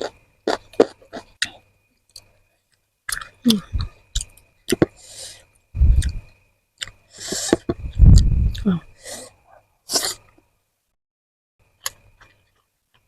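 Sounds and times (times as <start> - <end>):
chewing crunchy food: 0.0 - 5.0.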